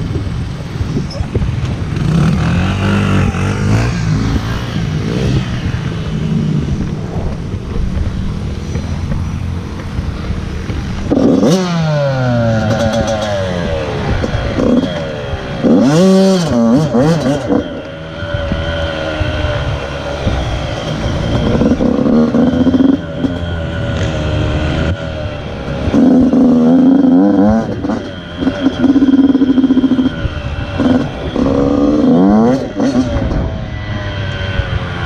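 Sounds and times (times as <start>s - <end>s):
small motorbike engine revving: 10.2s - 35.0s.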